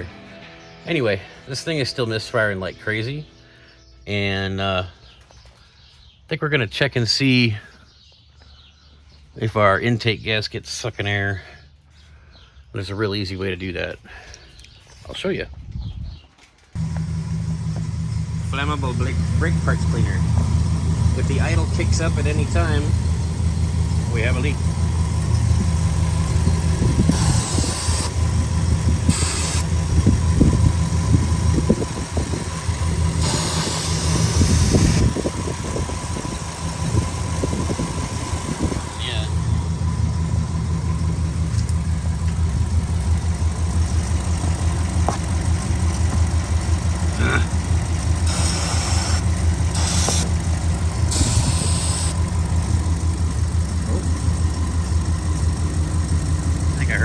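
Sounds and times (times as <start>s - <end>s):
engine idling with misfire: 16.7s - 57.0s
aerosol can spraying: 48.3s - 49.2s, 49.8s - 50.4s, 51.1s - 52.2s.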